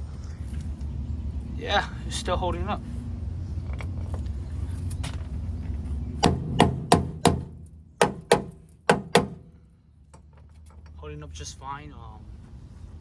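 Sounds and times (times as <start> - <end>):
low background rumble: 0.0 - 13.0
sharp knocks: 6.2 - 9.6.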